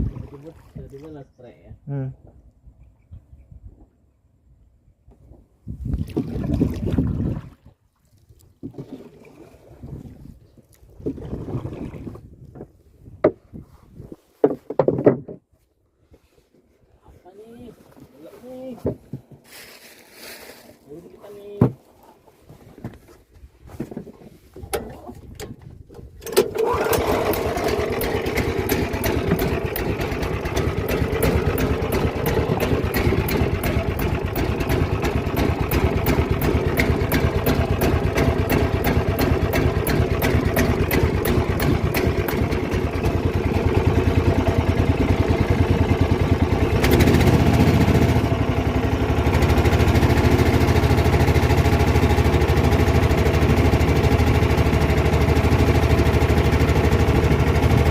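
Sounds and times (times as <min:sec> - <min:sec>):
small boat engine running: 0:08.6 - 0:12.3, 0:24.6 - 0:57.9.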